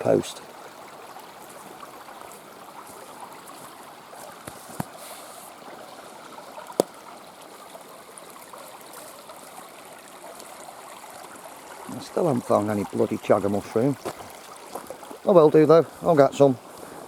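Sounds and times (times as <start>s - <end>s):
running water flowing: 0.0s - 17.0s.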